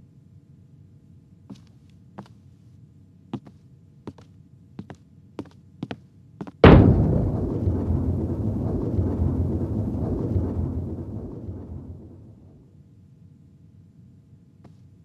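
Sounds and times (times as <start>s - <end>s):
loud boom rumbling: 6.6s - 12.7s.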